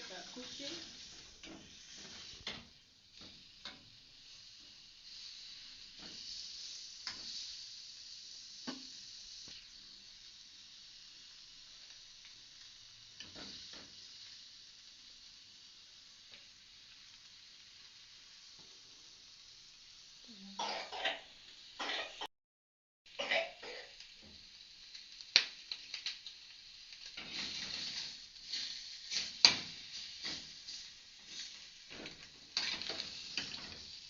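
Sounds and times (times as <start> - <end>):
bacon sizzling in a pan: 0.0 - 22.3, 23.1 - 34.0
utensil scraping a pan: 30.2 - 33.8.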